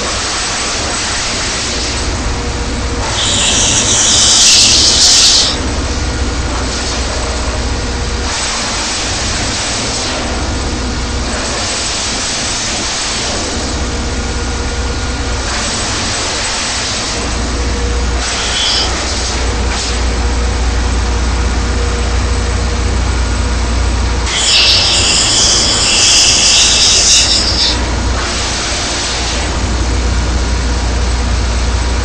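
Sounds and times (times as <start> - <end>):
wood chipper hissing: 0.0 - 10.0, 11.1 - 20.9, 21.6 - 30.1
harsh wood chipping burst: 3.1 - 5.6.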